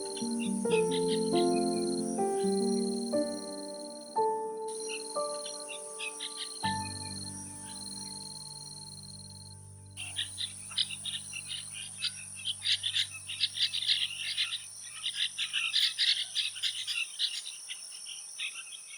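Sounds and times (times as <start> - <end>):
rapid animal chirping chorus: 0.0 - 8.7, 10.0 - 18.9
held music chord: 0.0 - 12.5
high-pitched insect drone: 0.0 - 15.0.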